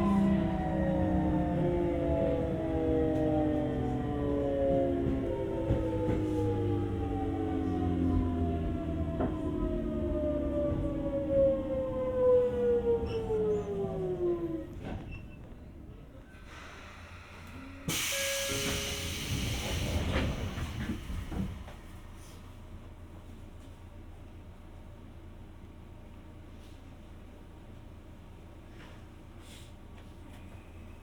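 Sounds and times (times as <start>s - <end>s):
train inverter whining: 0.0s - 22.0s.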